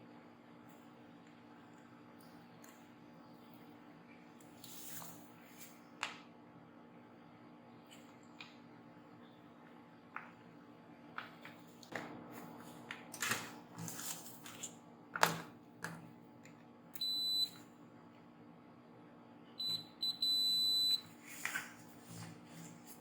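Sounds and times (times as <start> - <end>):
multimeter continuity beep: 17.0 - 17.6, 19.6 - 21.1.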